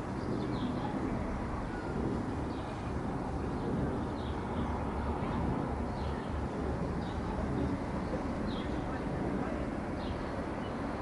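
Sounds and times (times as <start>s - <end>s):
steady low rumble: 0.0s - 11.0s.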